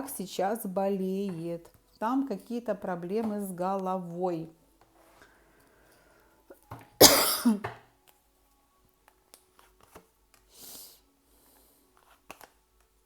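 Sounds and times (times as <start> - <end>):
woman clearing throat: 7.0 - 7.7.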